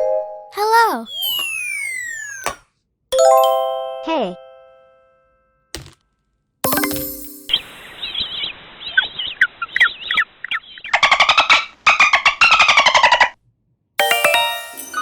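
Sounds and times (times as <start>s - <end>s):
high wavering cartoon squeaks: 0.7s - 2.6s, 11.0s - 13.4s
bright chime: 6.7s - 7.8s, 14.0s - 15.0s
rapidly repeated notes: 14.0s - 15.0s.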